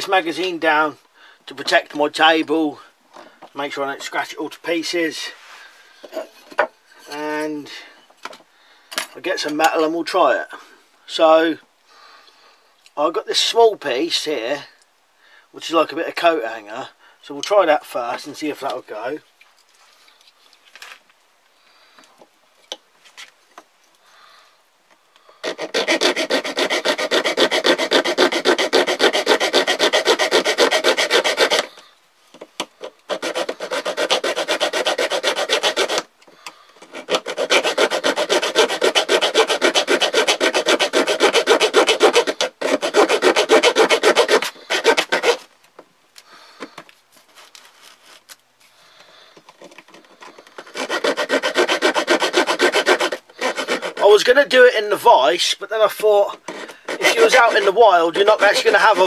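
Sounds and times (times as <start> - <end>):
hand saw cutting wire: 25.4 - 31.8, 32.8 - 36.1, 36.8 - 45.5, 49.9 - 54.3, 56.4 - 59.0.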